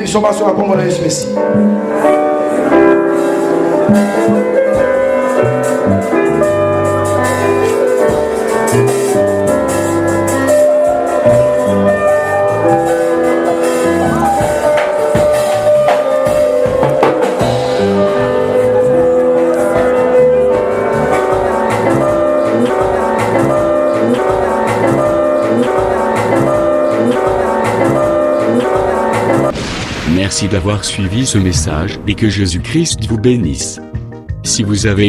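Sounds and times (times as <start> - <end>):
instrumental music with beat: 1.6 - 29.5, 32.6 - 34.5.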